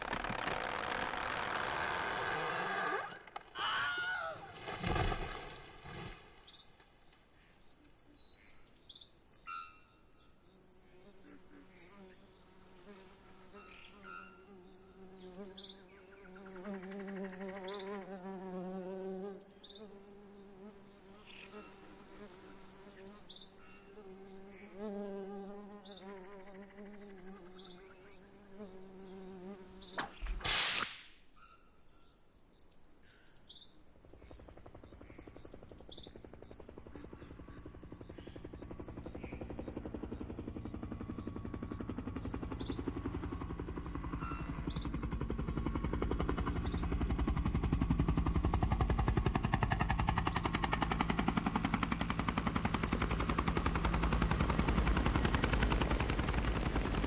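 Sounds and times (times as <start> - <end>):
insect buzzing: 0.0 - 47.4
sharp crack: 30.0 - 31.2.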